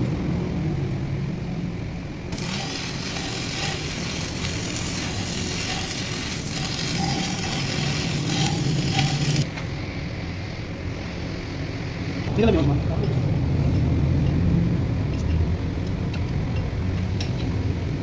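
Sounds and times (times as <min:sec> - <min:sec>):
machine humming: 0:02.3 - 0:09.5.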